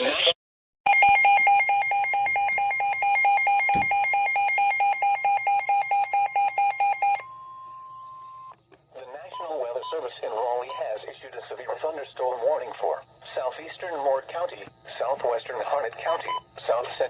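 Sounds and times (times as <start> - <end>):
rapid pulsing alert beeps: 0.9 - 7.2.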